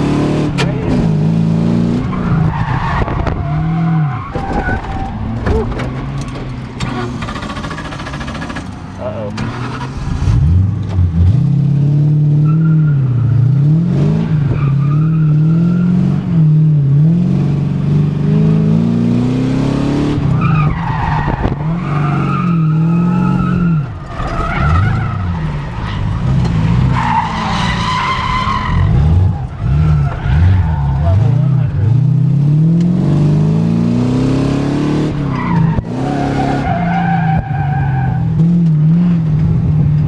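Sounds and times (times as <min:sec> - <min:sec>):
car engine revving: 0:00.0 - 0:40.0.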